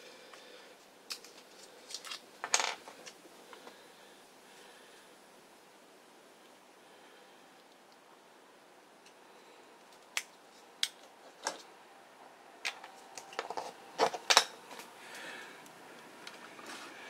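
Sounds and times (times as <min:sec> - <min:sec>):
plastic toy parts clicking and snapping: 0:01.1 - 0:02.2, 0:09.9 - 0:11.6.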